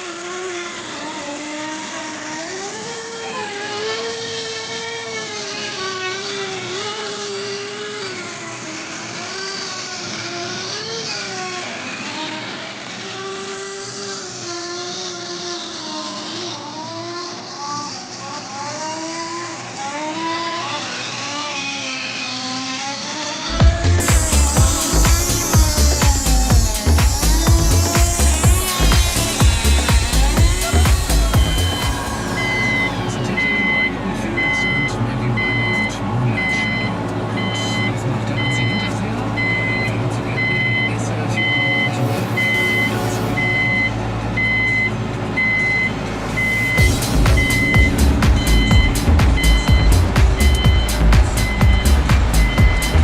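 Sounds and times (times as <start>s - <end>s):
small nitro engine revving: 0.0s - 53.0s
low rumble: 23.5s - 40.3s, 41.9s - 53.0s
electronic beeping: 23.5s - 53.0s
thin tone falling in pitch: 23.5s - 53.0s.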